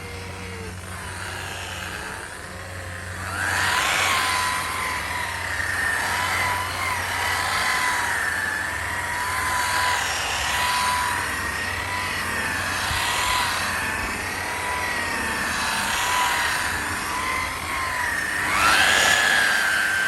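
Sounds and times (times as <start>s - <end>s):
power tool whining: 0.0s - 20.0s.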